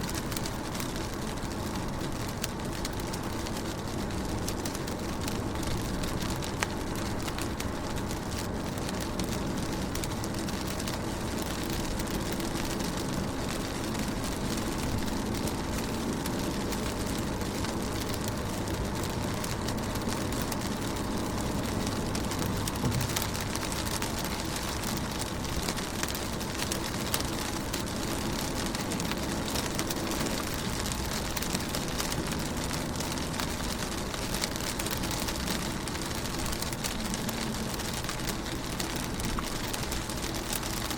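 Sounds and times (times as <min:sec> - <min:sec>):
rain on a car window: 0:00.0 - 0:40.9
low rumble: 0:19.8 - 0:25.0.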